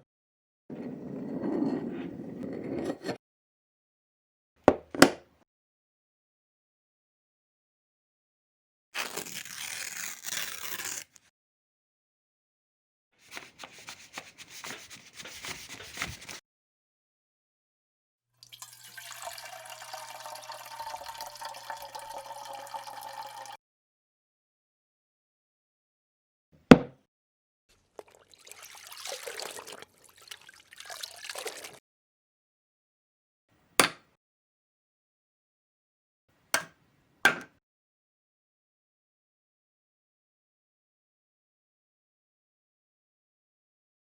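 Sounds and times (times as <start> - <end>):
wet crackly liquid sound: 27.9 - 31.8.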